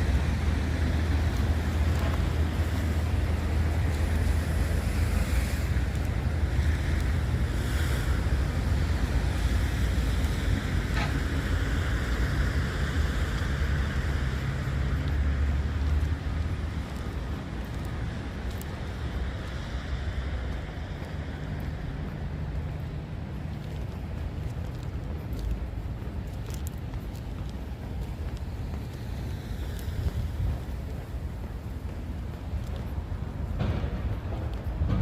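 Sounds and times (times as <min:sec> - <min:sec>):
rain hiss: 0:00.0 - 0:34.9.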